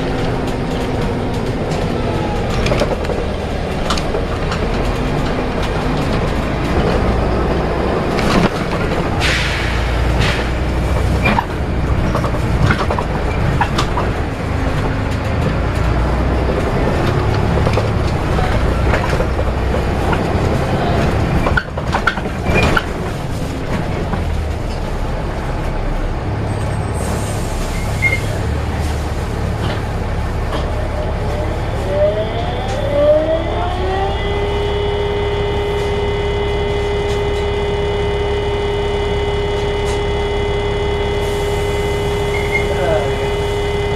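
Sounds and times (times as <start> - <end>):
bus engine and road rumble: 0.0 - 43.9
body rattles and knocks: 10.3 - 25.1.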